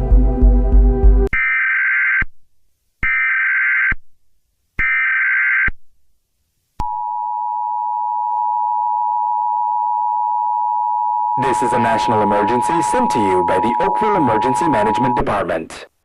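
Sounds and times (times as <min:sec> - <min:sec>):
low throbbing sound: 0:00.0 - 0:01.3
two-tone attention signal: 0:10.8 - 0:15.3
warbling data tones: 0:11.2 - 0:15.5.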